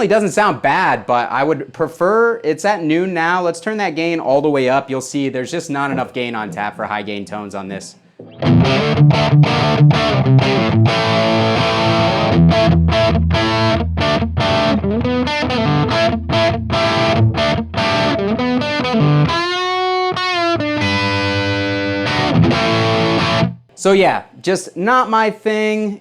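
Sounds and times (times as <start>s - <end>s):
distorted electric guitar riff: 5.9s - 23.6s.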